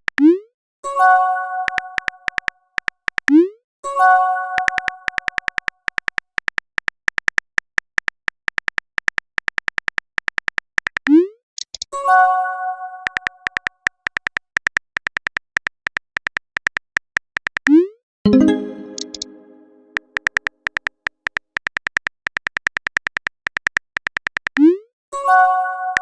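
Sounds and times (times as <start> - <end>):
keyboard tap clicks: 1.6 - 3.4, 4.6 - 11.0, 13.1 - 24.6
bright chime: 18.3 - 20.0.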